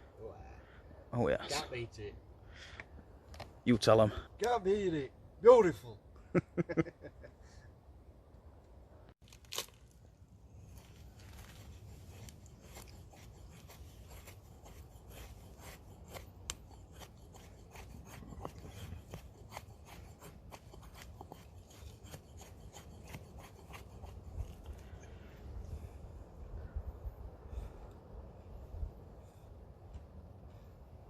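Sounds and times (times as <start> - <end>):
knife scraping wood: 10.6 - 25.2.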